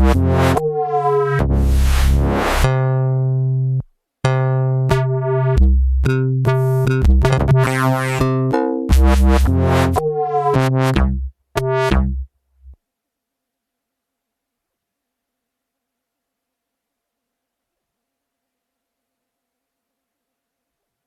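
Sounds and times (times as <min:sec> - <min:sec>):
chopped drum loop: 0:00.0 - 0:00.8, 0:08.9 - 0:10.0
synth bass stabs: 0:00.0 - 0:02.8, 0:08.9 - 0:12.2.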